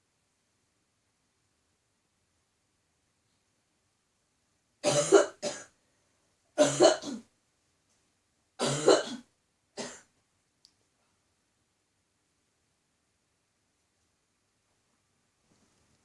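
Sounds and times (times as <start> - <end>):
woman coughing: 4.8 - 5.7, 6.6 - 7.2, 8.6 - 10.1.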